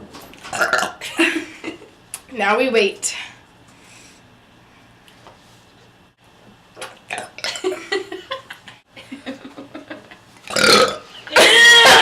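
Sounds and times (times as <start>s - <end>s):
woman burping: 10.5s - 12.0s.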